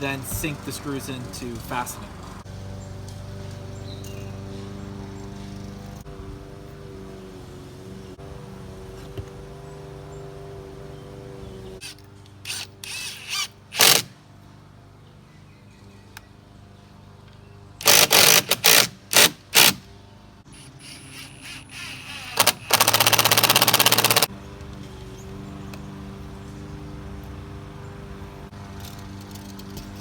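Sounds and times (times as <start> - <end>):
power drill driving screws into wood: 11.8 - 14.1, 17.8 - 19.8, 20.6 - 24.3.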